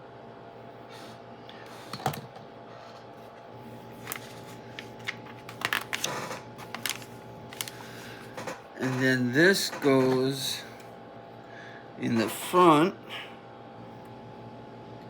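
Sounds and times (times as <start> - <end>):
faint steady hum: 0.0 - 15.0
plastic pieces clicking and rattling: 5.5 - 7.7.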